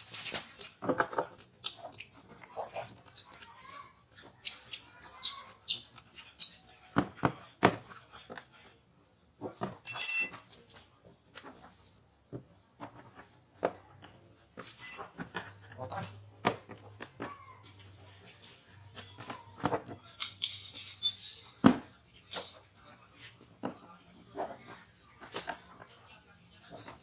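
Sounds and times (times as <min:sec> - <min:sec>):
tools clicking and scraping plastic: 0:00.1 - 0:08.6, 0:12.8 - 0:22.6.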